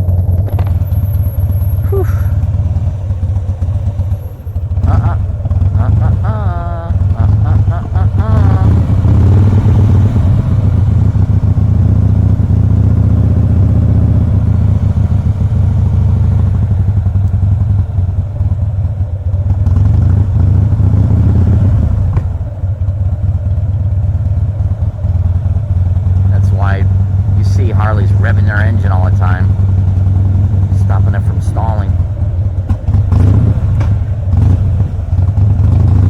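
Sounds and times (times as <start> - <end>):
motorcycle engine running: 0.0 - 36.0.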